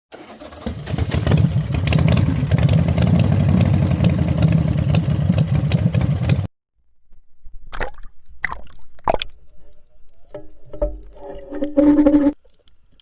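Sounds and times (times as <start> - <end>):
engine running with rattling clatter: 0.2 - 6.5.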